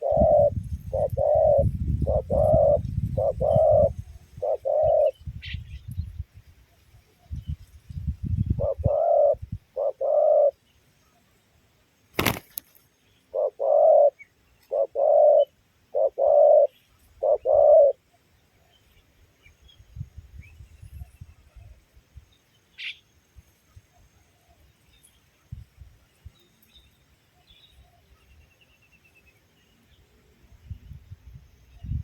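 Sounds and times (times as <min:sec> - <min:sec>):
dove cooing: 0:00.0 - 0:05.2, 0:08.5 - 0:10.6, 0:13.3 - 0:18.0.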